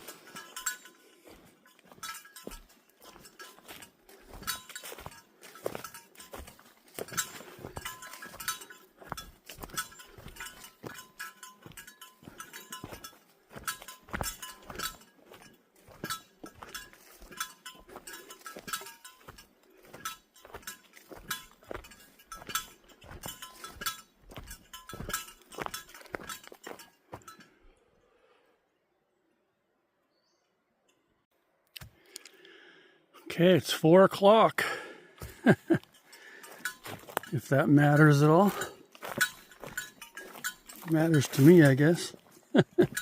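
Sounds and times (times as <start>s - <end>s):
footsteps on a trail: 0.0s - 27.5s, 33.7s - 43.0s
metallic jingle: 0.0s - 27.6s, 34.6s - 43.0s.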